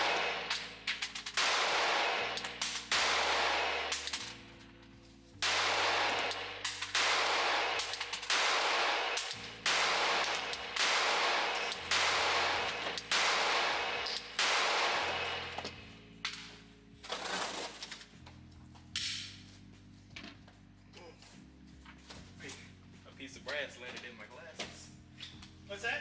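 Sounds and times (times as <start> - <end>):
pistol shots echoing: 0.0 - 4.7, 5.4 - 16.5.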